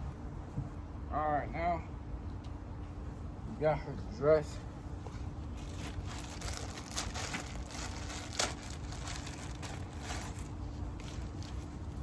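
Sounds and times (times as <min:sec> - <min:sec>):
plastic wrapping crinkling: 0:05.5 - 0:12.0.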